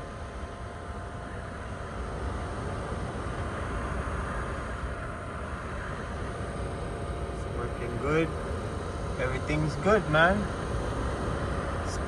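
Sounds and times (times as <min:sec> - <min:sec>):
faint motor hum: 0:00.0 - 0:12.0
roof vent fan air rush: 0:00.0 - 0:12.0.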